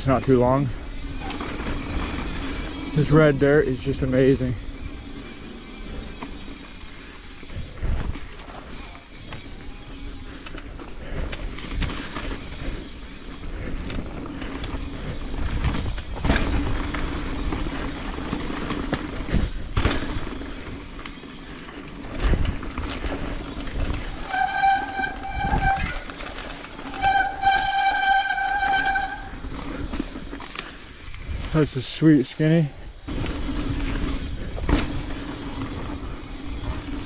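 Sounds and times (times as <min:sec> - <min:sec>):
man talking: 0:00.0 - 0:00.8, 0:03.0 - 0:04.6, 0:31.5 - 0:32.8
bike rolling over dirt trail: 0:00.0 - 0:37.0
bike brakes squealing: 0:00.8 - 0:07.5, 0:08.8 - 0:10.4, 0:24.0 - 0:30.2
bike knocks and rattles: 0:13.7 - 0:21.2, 0:33.2 - 0:37.0.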